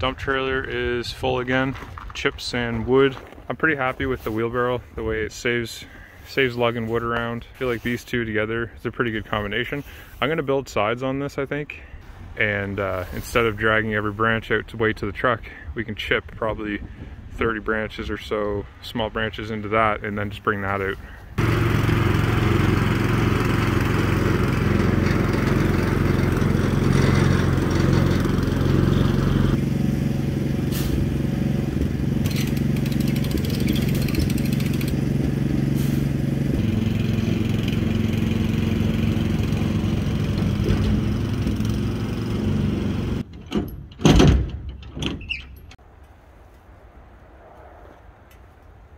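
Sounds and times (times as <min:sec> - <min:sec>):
small gasoline engine running: 0:21.4 - 0:43.2.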